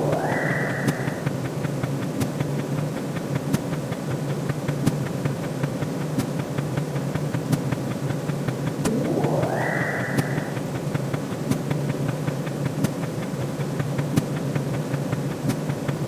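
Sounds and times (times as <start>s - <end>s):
rising electronic sweep: 0.0s - 1.7s, 8.8s - 11.1s
low electronic droning hum: 0.0s - 1.8s, 8.7s - 11.2s.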